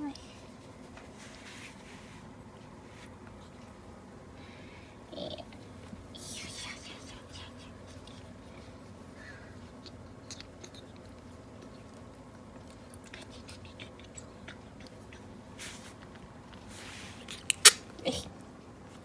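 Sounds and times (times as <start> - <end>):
faint small clicks and rustles: 5.4 - 18.0.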